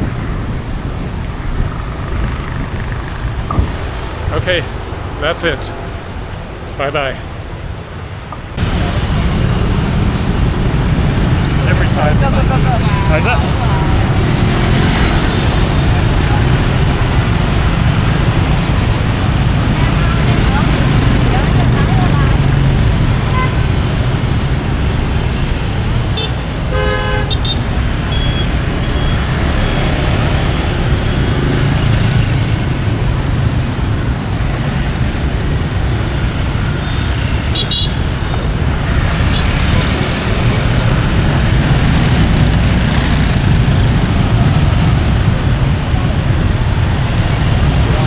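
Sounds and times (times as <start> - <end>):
street traffic: 0.0 - 48.0
vehicle horn tooting: 21.8 - 23.7, 26.1 - 29.1, 36.9 - 38.1.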